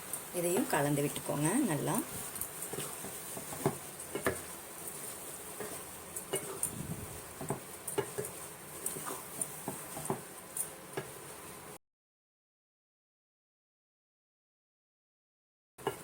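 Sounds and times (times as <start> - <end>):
spoon scraping cooking pan: 0.6 - 11.2.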